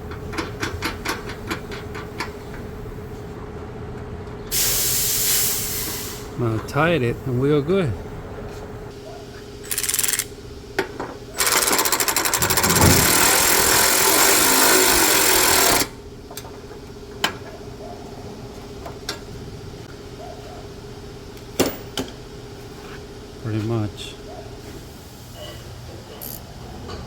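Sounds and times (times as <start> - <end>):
impact wrench hammering: 11.4 - 15.9, 21.6 - 22.2.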